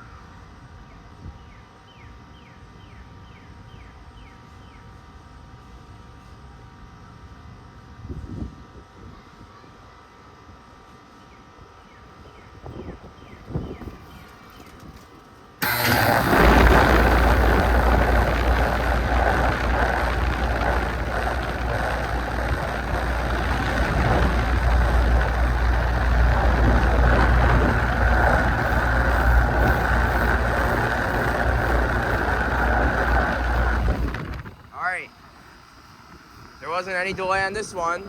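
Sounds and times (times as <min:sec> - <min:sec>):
air conditioner compressor hum: 0:00.0 - 0:38.0
condenser fan rushing: 0:11.7 - 0:38.0.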